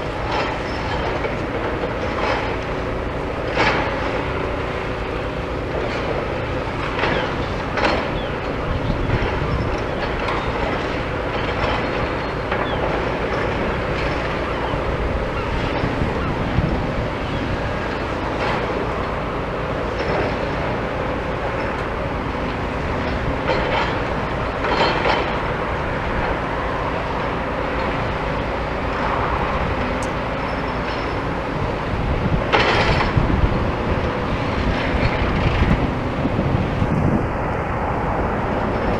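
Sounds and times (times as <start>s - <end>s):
excavator engine running: 0.0s - 38.9s
clanks and crunches of concrete: 32.5s - 33.2s.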